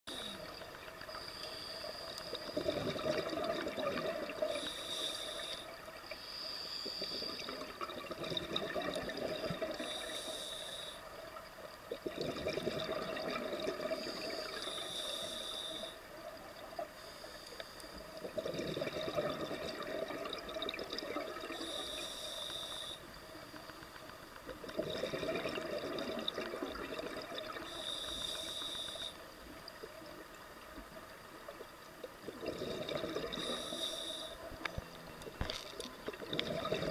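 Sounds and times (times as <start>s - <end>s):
bubbling exhalation underwater: 2.6s - 4.5s, 12.0s - 14.1s, 18.2s - 21.5s, 24.7s - 27.6s, 32.2s - 33.6s, 36.0s - 36.9s
regulator inhalation hiss: 4.3s - 7.4s, 9.8s - 11.3s, 14.0s - 16.2s, 21.5s - 23.5s, 27.6s - 29.4s, 33.4s - 34.8s.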